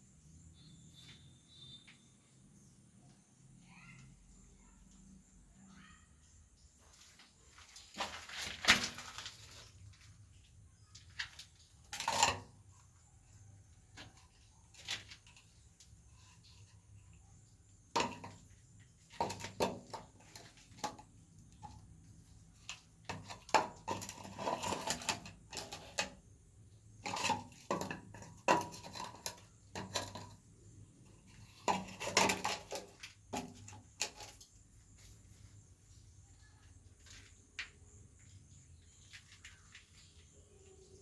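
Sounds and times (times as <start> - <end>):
tools clinking and scraping: 11.8 - 12.8, 22.7 - 26.2, 27.0 - 30.4, 31.2 - 34.6.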